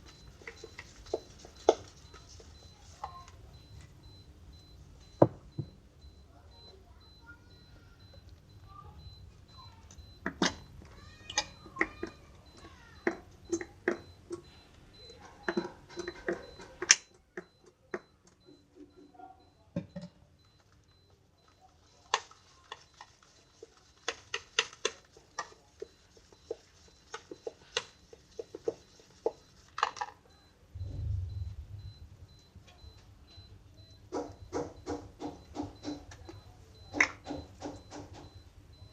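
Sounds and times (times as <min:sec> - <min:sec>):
low rumble: 0:30.7 - 0:32.5.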